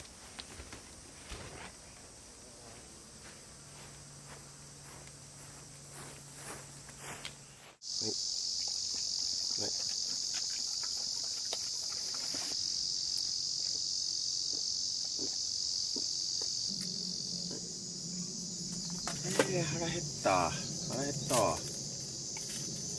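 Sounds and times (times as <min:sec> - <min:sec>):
insects singing: 0:00.0 - 0:22.9.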